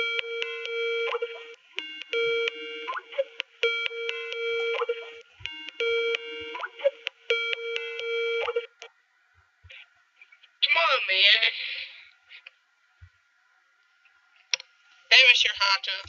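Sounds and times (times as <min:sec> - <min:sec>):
electronic call ringtone: 0:00.0 - 0:08.7.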